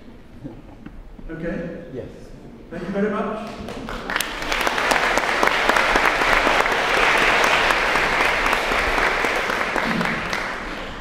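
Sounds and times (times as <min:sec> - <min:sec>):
audience applauding: 0:03.4 - 0:11.0.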